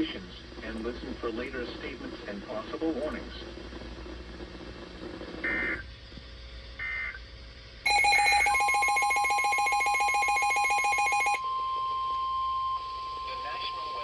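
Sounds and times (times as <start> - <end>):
steady warning alarm tone: 7.9 - 14.0.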